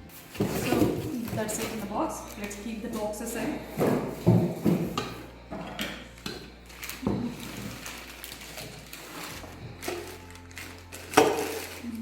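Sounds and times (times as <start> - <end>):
cardboard box rustling: 0.1 - 5.0.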